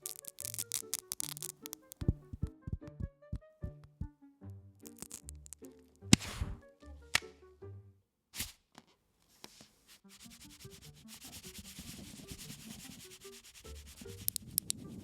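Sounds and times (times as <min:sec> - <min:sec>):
sharp clicks: 0:00.0 - 0:02.1, 0:14.2 - 0:14.8
scratchy rubbing: 0:00.0 - 0:02.2, 0:04.8 - 0:06.5, 0:09.5 - 0:15.0
soft background music: 0:00.0 - 0:08.0, 0:09.4 - 0:15.0.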